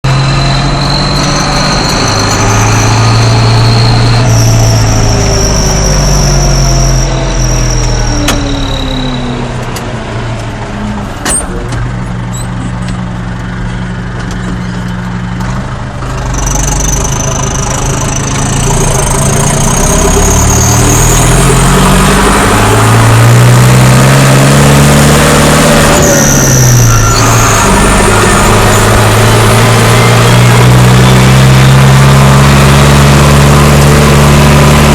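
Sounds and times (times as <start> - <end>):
tractor diesel engine revving: 0.0 - 34.9
turbo whistle: 0.1 - 9.5, 25.6 - 32.6.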